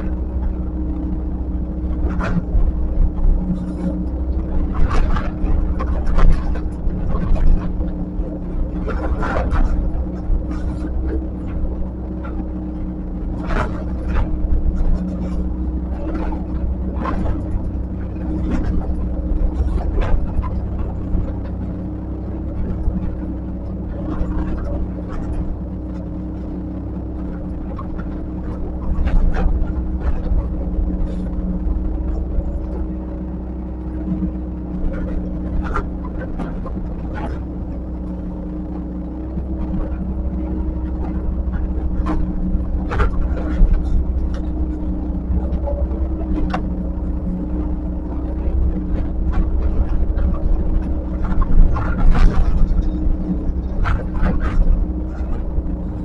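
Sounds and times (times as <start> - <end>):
diesel engine rumbling: 0.0 - 56.0.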